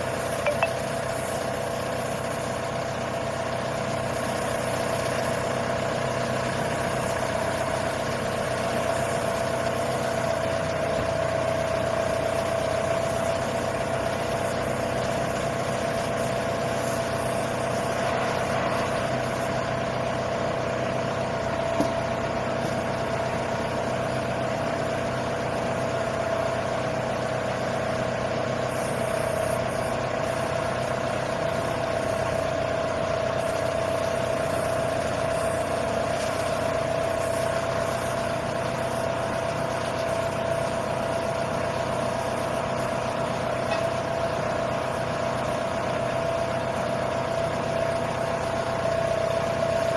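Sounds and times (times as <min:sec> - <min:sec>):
constant whine: 0:00.0 - 0:03.2, 0:06.8 - 0:49.9
drilling rig engine running: 0:00.0 - 0:49.9.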